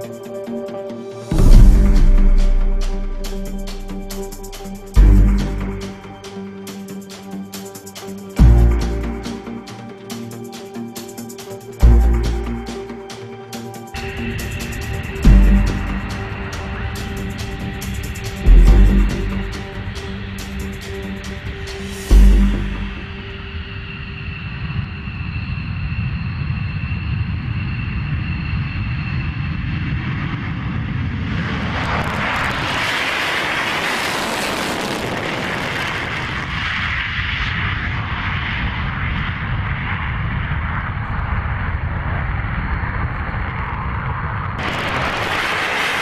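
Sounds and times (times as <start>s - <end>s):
jet engines rumbling: 0.0s - 46.0s.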